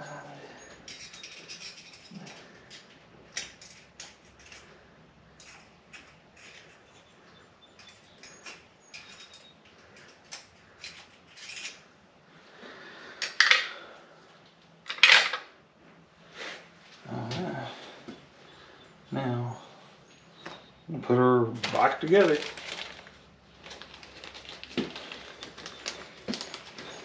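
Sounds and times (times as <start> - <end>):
metal parts and tools clinking: 0.6 - 4.7, 5.4 - 11.9, 14.9 - 15.5
scraping and rustling: 21.6 - 27.0.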